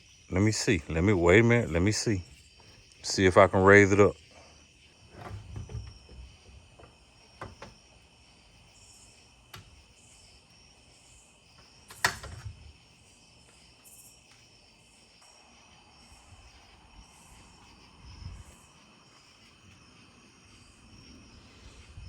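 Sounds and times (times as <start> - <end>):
insects chirring: 0.0 - 22.0
motor shaft knocking and clanking: 5.1 - 7.8.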